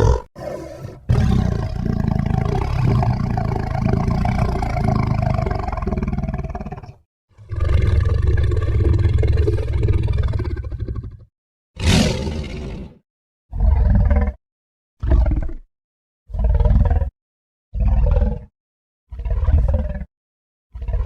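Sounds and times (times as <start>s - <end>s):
deep monster roars: 0.0s - 11.1s, 11.8s - 14.4s.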